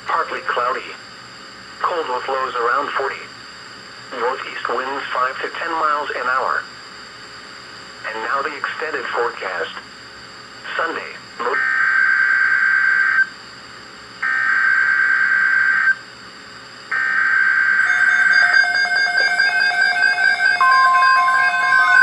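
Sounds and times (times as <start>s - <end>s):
buzzing digital data tones: 16.9s - 22.0s
steady alert tone: 17.8s - 22.0s
stepping electronic tone pattern: 17.8s - 22.0s.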